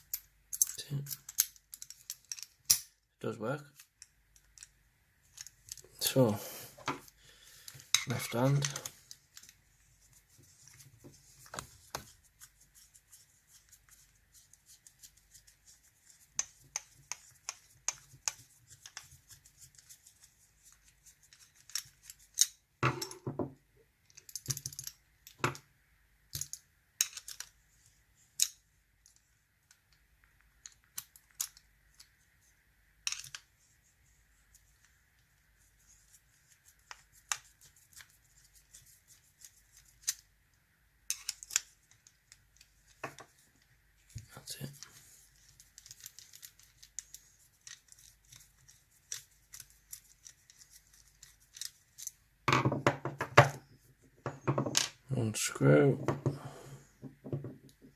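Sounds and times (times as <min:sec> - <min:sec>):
small metal clicks and scrapes: 0:00.0 - 0:02.9, 0:13.6 - 0:22.6, 0:36.7 - 0:40.3, 0:41.1 - 0:52.2.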